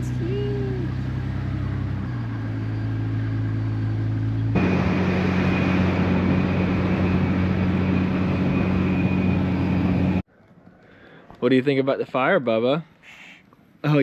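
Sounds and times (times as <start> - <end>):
car engine running: 0.0 - 10.2
road noise: 0.0 - 14.0.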